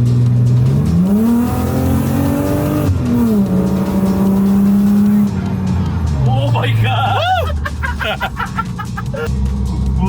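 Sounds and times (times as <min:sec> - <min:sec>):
car engine revving: 0:00.0 - 0:06.8.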